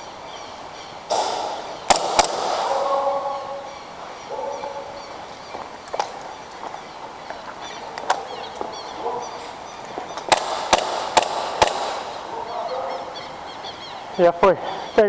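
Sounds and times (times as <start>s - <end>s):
small birds chirping: 0.0s - 15.0s
gas pistol shots cracking: 1.1s - 3.3s, 10.1s - 12.5s.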